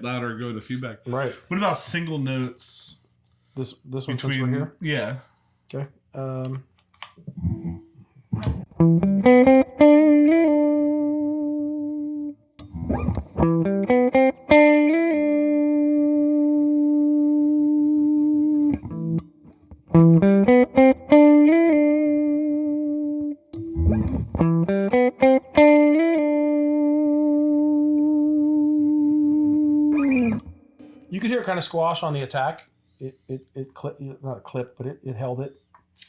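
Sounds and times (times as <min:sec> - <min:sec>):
compressed electric guitar notes: 0:08.4 - 0:31.0.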